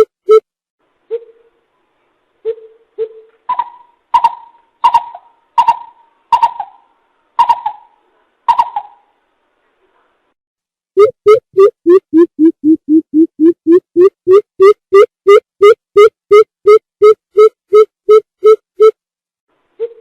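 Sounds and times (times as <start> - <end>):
bird hooting: 1.1 - 1.6, 2.4 - 9.1.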